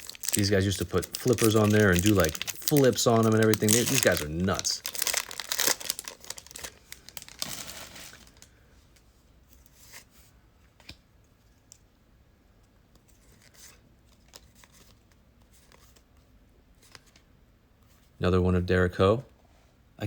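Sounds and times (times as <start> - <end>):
card pack wrapper crinkling: 0.0 - 8.5.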